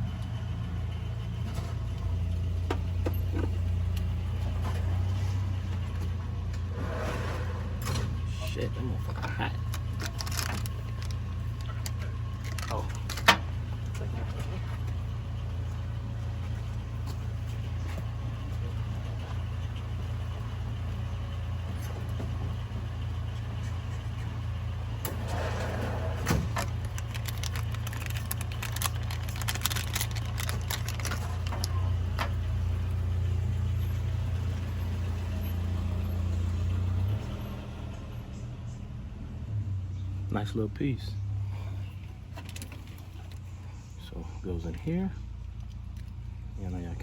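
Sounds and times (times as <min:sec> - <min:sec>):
car engine idling: 0:00.0 - 0:47.0
clicks and rattles of bulb handling: 0:09.6 - 0:13.4, 0:26.6 - 0:32.4.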